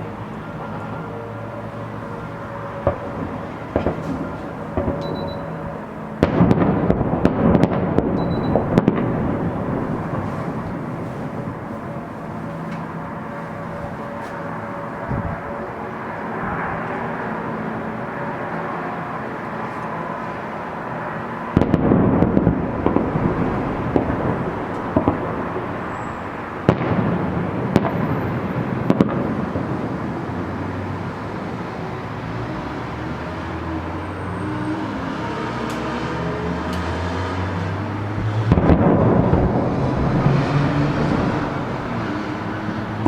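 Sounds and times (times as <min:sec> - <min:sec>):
steady background din: 0:00.0 - 0:43.0
fireworks booming and crackling: 0:00.1 - 0:43.0
sharp firework bangs: 0:02.8 - 0:12.3, 0:21.6 - 0:30.4, 0:38.4 - 0:43.0.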